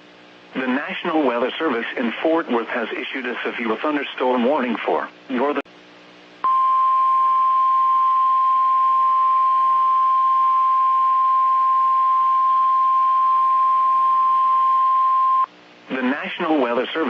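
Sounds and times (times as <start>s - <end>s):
steady alarm tone: 6.5s - 15.5s.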